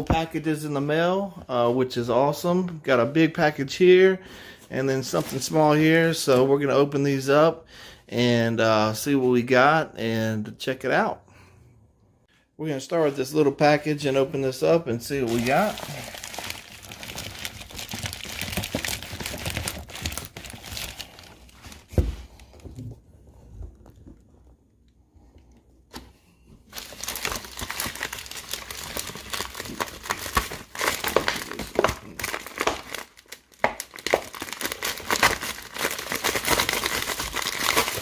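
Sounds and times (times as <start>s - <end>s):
packaging crinkling and tearing: 15.1s - 21.9s, 26.7s - 38.0s.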